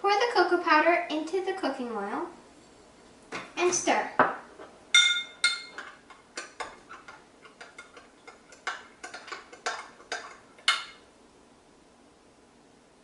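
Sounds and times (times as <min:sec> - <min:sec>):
spoon clinking against container: 0:05.0 - 0:06.8.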